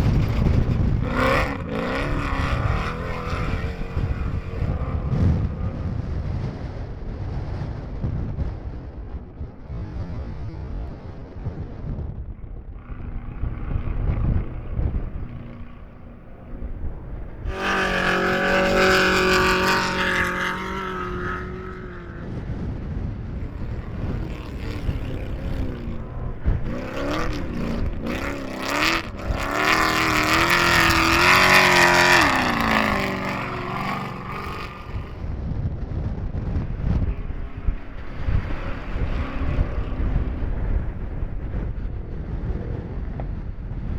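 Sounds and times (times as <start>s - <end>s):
race vehicle engines revving: 0.0s - 8.6s, 12.4s - 43.1s
low rumble: 10.9s - 43.5s.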